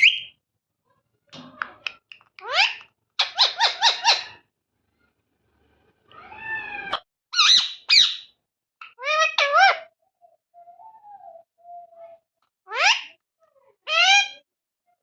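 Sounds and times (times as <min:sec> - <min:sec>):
parrot squawking and squeaking: 0:00.0 - 0:00.3, 0:01.8 - 0:04.5, 0:06.2 - 0:09.9, 0:12.7 - 0:13.2, 0:13.9 - 0:14.4.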